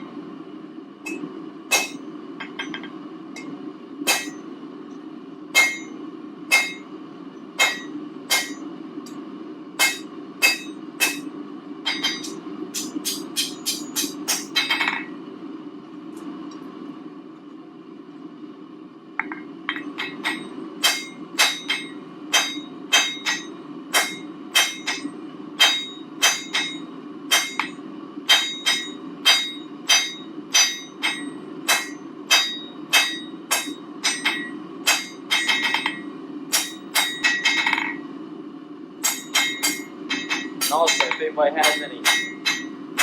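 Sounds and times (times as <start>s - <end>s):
steady low hum: 0.0s - 43.0s
hammer striking on ringing anvil: 1.0s - 4.4s, 5.5s - 6.9s, 7.6s - 8.7s, 9.8s - 15.1s, 19.2s - 38.0s, 39.0s - 43.0s.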